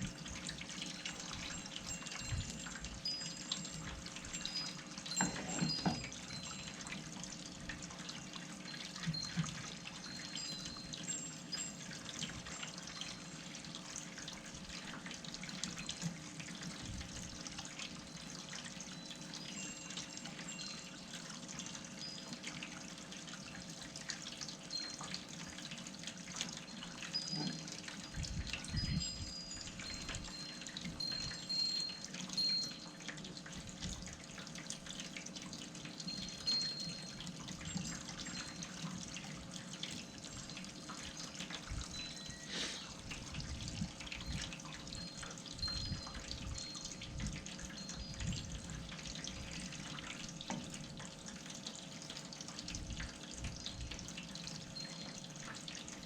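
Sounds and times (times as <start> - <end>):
bubbles crackling in pot: 0.0 - 56.0.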